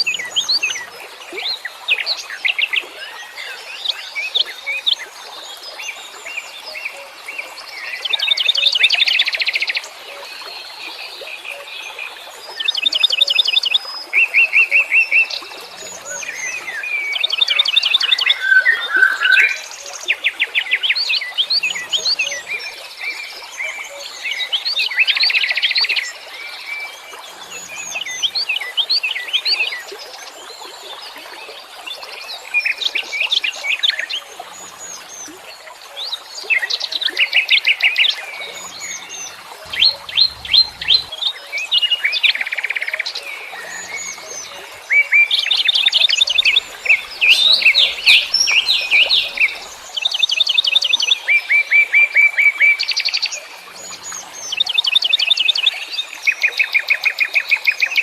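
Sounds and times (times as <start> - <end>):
songbirds chirping and trilling: 36.4 - 42.6, 43.2 - 50.8.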